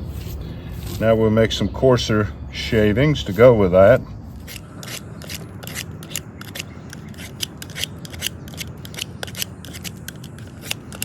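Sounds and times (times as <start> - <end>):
knife carving wood shavings: 4.4 - 11.0.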